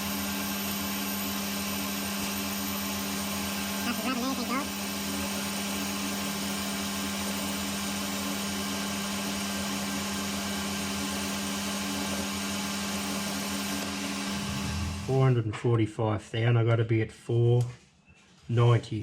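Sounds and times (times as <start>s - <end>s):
metal lathe motor hum: 0.0s - 15.2s.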